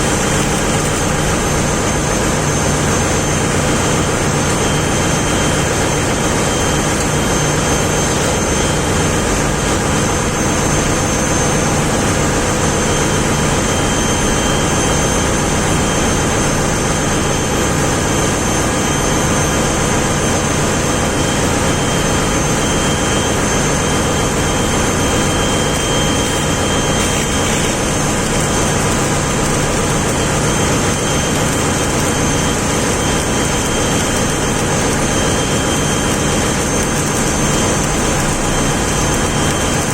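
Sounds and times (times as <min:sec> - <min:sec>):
ship's machinery droning: 0:00.0 - 0:39.9
high whines: 0:19.4 - 0:39.9.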